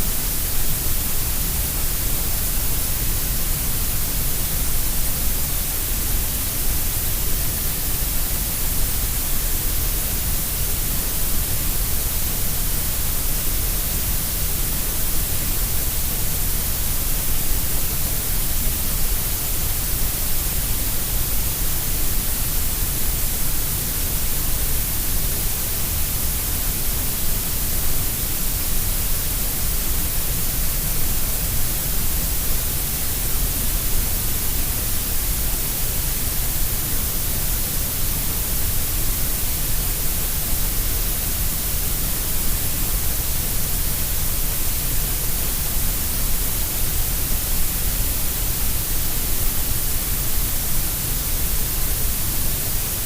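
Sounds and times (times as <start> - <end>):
grey noise hiss: 0.0 - 53.0.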